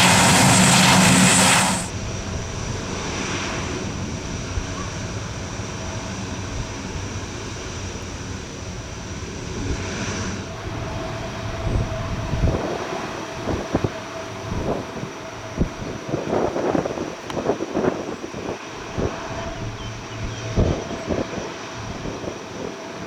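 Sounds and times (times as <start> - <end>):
turboprop engines whining: 0.0 - 23.0
wind buffeting microphone: 9.0 - 23.0.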